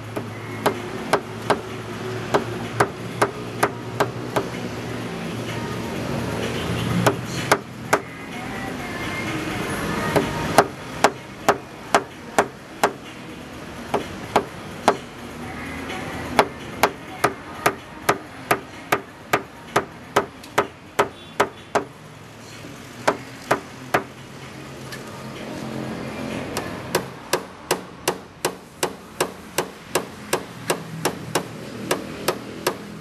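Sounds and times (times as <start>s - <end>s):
hammer tapping on metal: 0.1s - 4.6s, 7.0s - 8.1s, 10.1s - 13.1s, 16.3s - 21.9s, 23.0s - 24.1s, 26.6s - 32.9s.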